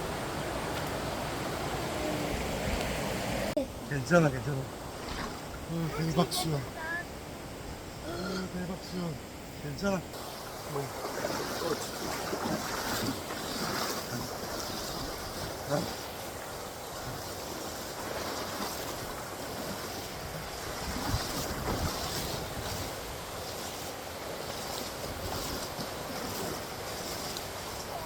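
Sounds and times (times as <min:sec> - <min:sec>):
water rushing over rocks: 0:00.0 - 0:07.1, 0:08.0 - 0:28.0
splashes of wading: 0:04.2 - 0:28.0
wind buffeting microphone: 0:18.7 - 0:23.6.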